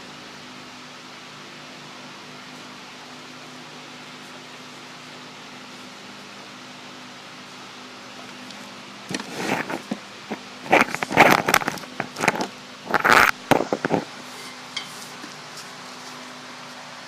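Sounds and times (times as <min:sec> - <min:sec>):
wires rustling: 0:07.2 - 0:16.8.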